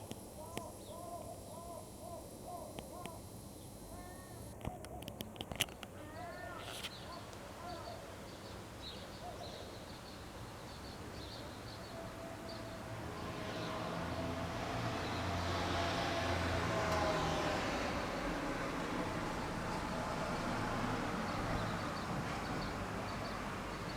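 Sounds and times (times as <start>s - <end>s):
steady whine: 0.0s - 4.6s
faint bird chirps: 0.4s - 4.9s
vehicle engine hum and road noise: 13.0s - 23.9s.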